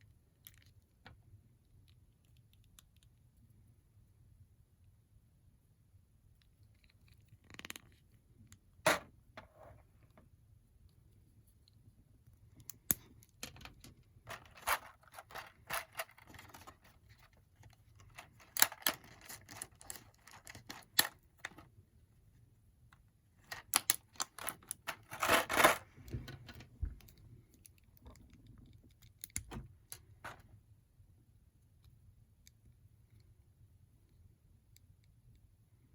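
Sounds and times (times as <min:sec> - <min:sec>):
rustling of handled toy parts: 0:08.9 - 0:21.8, 0:22.9 - 0:30.6.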